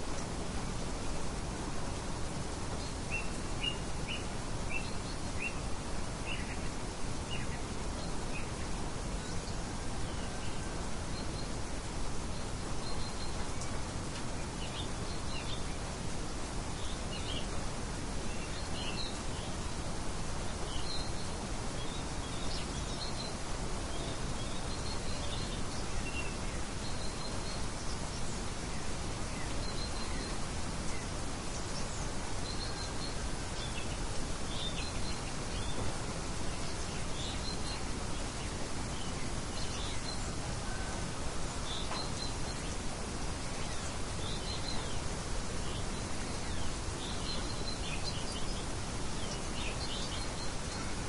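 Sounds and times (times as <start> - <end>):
soft hiss of light wind: 0.0 - 51.0
small birds chirping: 2.3 - 51.0.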